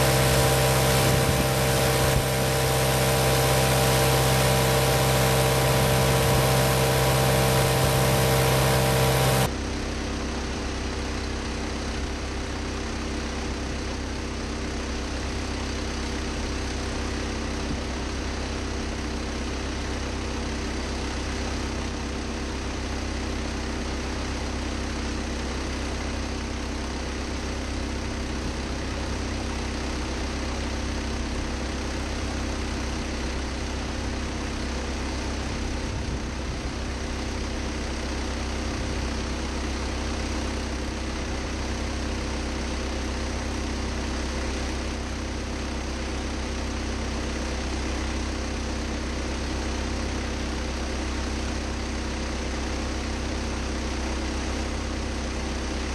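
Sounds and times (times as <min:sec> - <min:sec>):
machine motor humming: 0:00.0 - 0:09.5.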